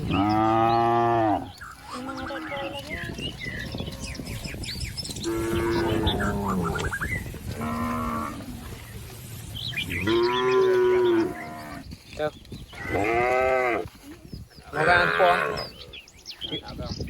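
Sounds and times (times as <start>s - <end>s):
cattle mooing: 5.2s - 8.6s, 10.0s - 11.8s, 12.8s - 13.9s, 14.8s - 15.6s.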